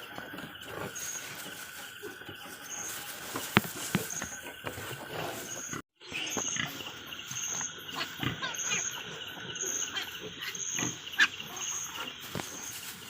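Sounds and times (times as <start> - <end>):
rustling: 0.0 - 5.8, 11.9 - 13.0
high insect chirp: 0.0 - 13.0
pigs grunting and squeaking: 0.0 - 13.0.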